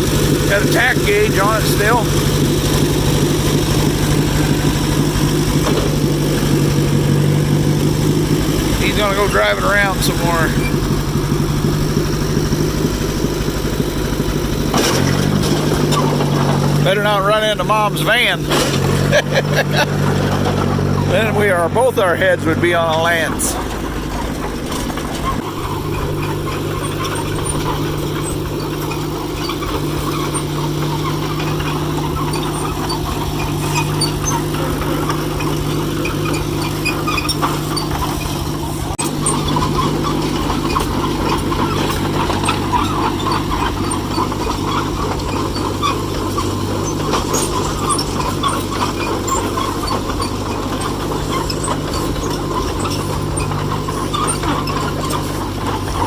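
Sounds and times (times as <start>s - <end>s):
dozer engine running: 0.0s - 56.0s.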